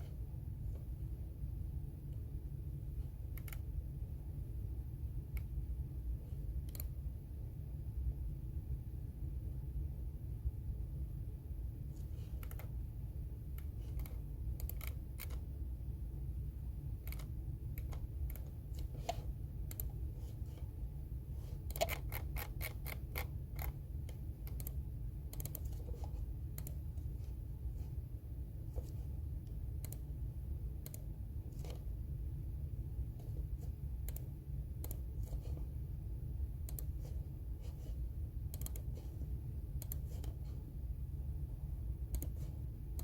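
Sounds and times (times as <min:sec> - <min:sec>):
low background hum: 0:00.0 - 0:43.0
computer keyboard typing: 0:03.3 - 0:03.7, 0:12.3 - 0:12.8, 0:13.5 - 0:15.5, 0:17.0 - 0:20.0, 0:21.6 - 0:26.9, 0:38.4 - 0:39.1, 0:39.7 - 0:40.4, 0:42.1 - 0:43.0.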